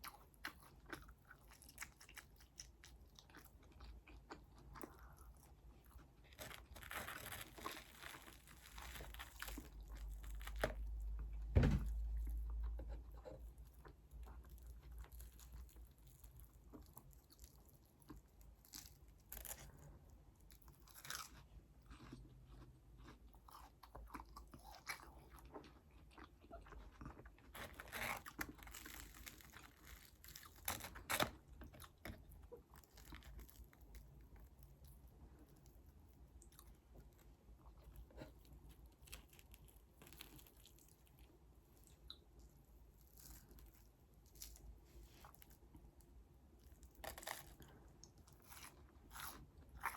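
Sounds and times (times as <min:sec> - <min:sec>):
crunchy bites and chewing: 0:00.0 - 0:35.0, 0:36.3 - 0:49.9
low thump: 0:11.5 - 0:12.0.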